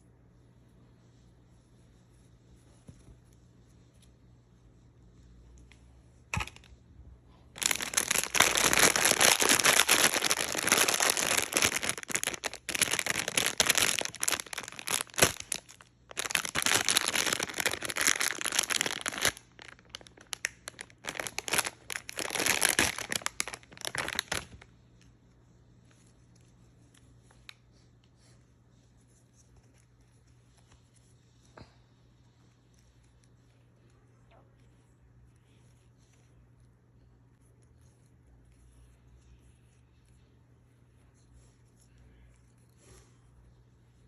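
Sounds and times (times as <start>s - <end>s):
packaging crinkling and tearing: 7.5s - 24.7s.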